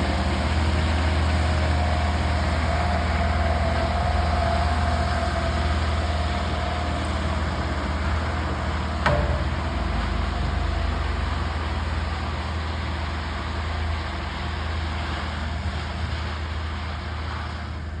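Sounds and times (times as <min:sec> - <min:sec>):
engine droning: 0:00.0 - 0:18.0
sharp metal clank: 0:09.1 - 0:10.7.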